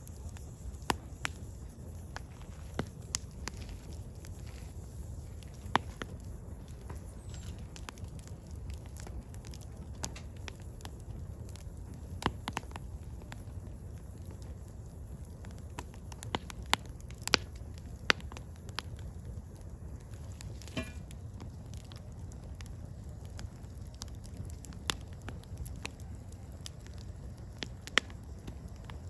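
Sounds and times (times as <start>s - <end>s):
fire hissing: 0.0s - 29.0s
firewood burning with crackles: 0.0s - 29.0s.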